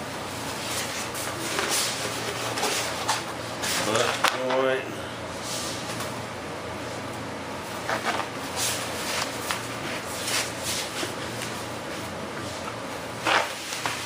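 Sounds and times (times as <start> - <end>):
steady low hum: 0.0 - 14.0
paper sheets rustling: 7.8 - 14.0.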